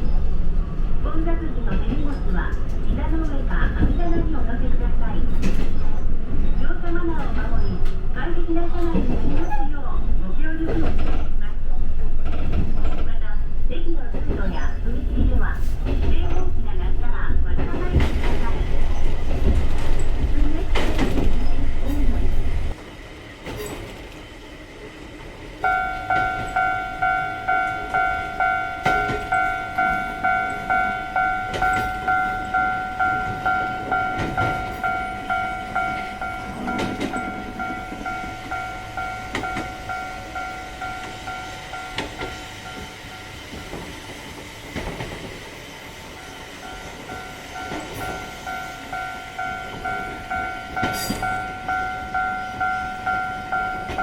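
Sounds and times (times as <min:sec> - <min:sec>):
train running: 0:00.0 - 0:54.0
level crossing bell clanging: 0:25.6 - 0:43.6, 0:46.1 - 0:54.0.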